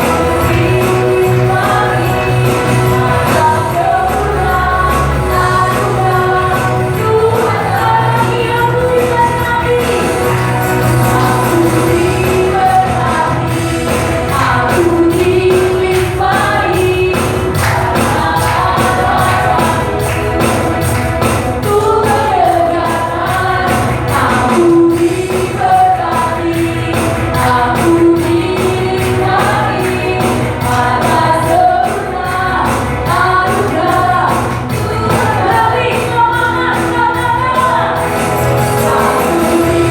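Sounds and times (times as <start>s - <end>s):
band playing: 0.0s - 39.9s
congregation singing a praise song: 0.0s - 39.9s
steady percussion beat: 0.0s - 39.9s.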